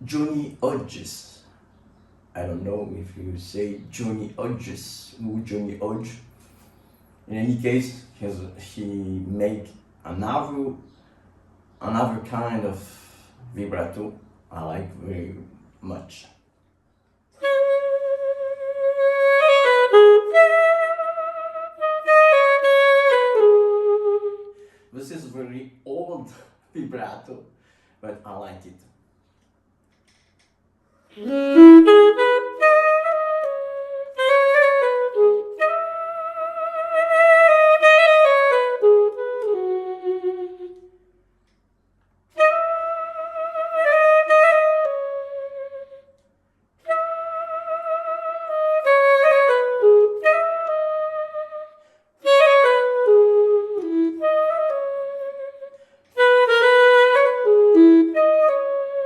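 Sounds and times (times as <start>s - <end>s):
saxophone melody with vibrato: 17.4s - 24.7s, 31.1s - 41.1s, 42.3s - 46.2s, 46.8s - 59.0s.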